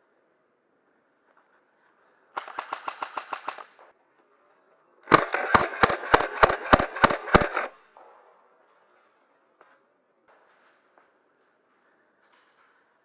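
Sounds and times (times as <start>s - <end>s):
airsoft gun firing rapid shots: 2.4s - 3.9s, 5.1s - 7.7s.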